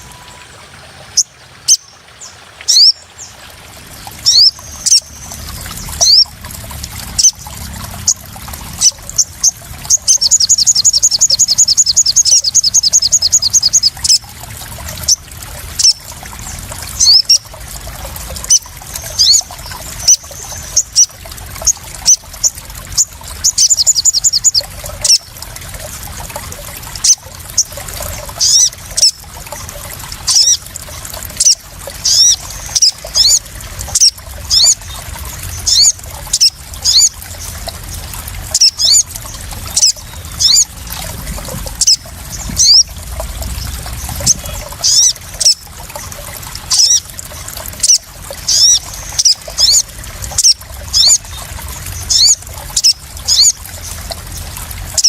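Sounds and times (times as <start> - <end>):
birds chirping: 0.0 - 14.3, 15.0 - 25.4, 26.4 - 54.4
water splashing and trickling: 0.0 - 55.0
bird trills: 38.5 - 40.8, 44.2 - 45.6, 46.7 - 47.1.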